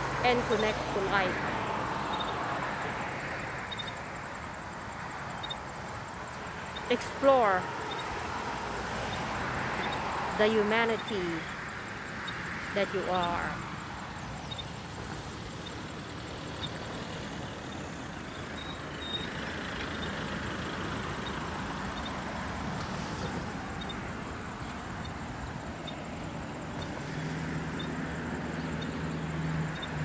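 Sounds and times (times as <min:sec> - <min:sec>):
vehicle engine and road noise: 0:00.0 - 0:30.0.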